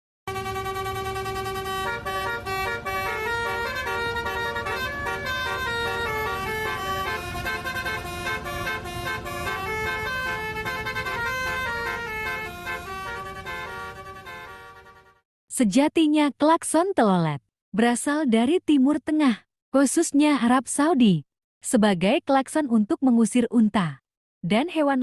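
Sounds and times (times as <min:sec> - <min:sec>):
low engine rumble: 0:00.3 - 0:14.2
musical bus horn melody: 0:00.3 - 0:15.2.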